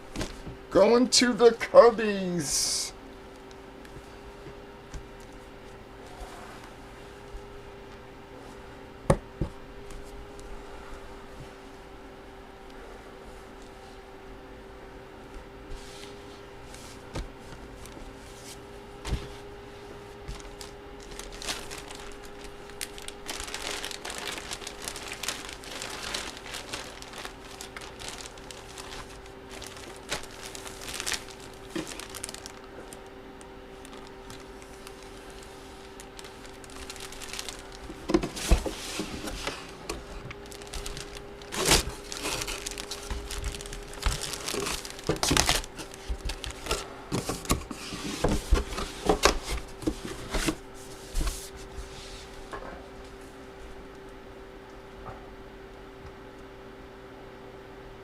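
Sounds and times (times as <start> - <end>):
faint steady hum: 0.0 - 58.0
plastic packaging crinkling: 20.2 - 50.6.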